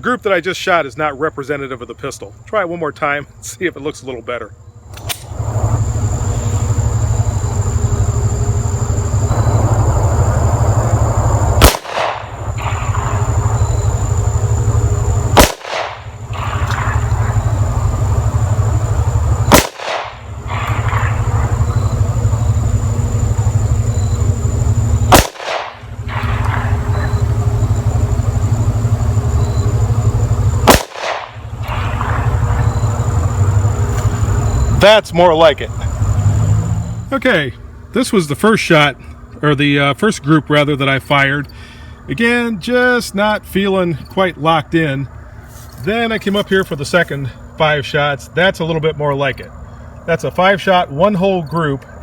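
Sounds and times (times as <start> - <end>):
background rumble: 0.9 - 39.6
pistol shots: 11.6 - 13.4, 15.3 - 17.5, 19.4 - 21.6, 25.1 - 27.2, 30.6 - 32.7.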